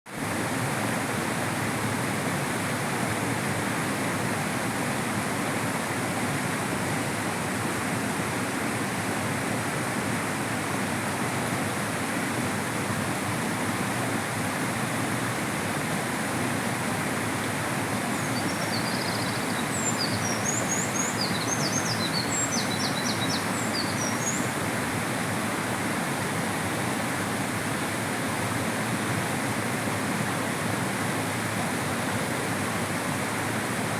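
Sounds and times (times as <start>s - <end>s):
river rushing: 0.2s - 33.9s
small bird chirping: 18.1s - 24.5s.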